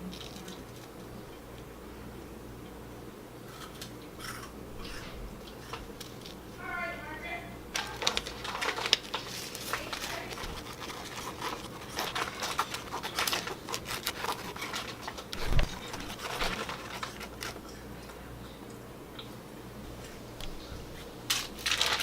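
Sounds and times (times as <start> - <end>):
plastic spoon scraping tray: 7.9 - 17.6.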